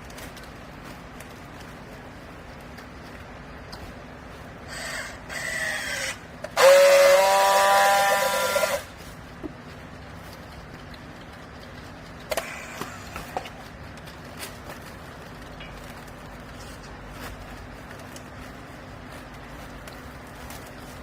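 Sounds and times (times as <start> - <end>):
loud hissing whine: 4.7 - 9.0.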